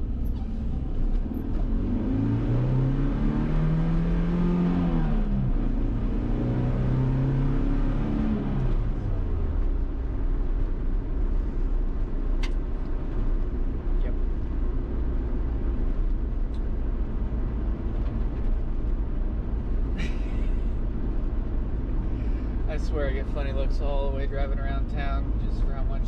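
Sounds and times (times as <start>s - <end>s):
pickup engine revving hard: 1.7s - 8.8s.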